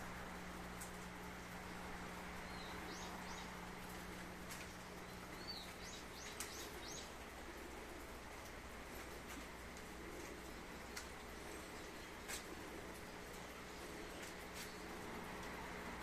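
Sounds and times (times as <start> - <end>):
low hum and hiss: 0.0 - 16.0
small bird chirping: 5.3 - 7.2.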